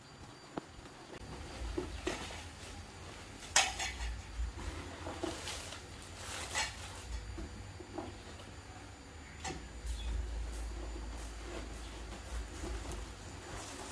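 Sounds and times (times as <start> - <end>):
dishes and utensils clinking: 3.4 - 4.4.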